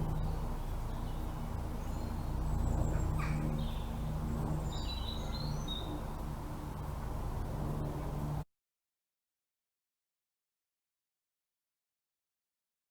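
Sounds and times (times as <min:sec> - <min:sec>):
bird calls and chirps: 0:00.0 - 0:06.2
low hum: 0:00.0 - 0:08.4.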